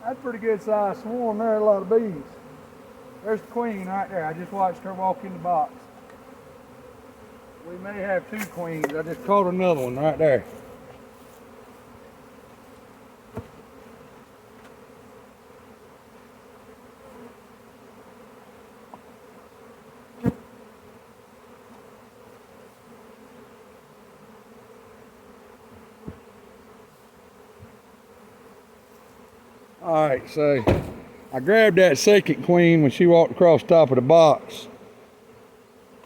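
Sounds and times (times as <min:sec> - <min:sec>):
bee swarm buzzing: 0:00.0 - 0:36.0
sharp knocks: 0:30.6 - 0:31.2.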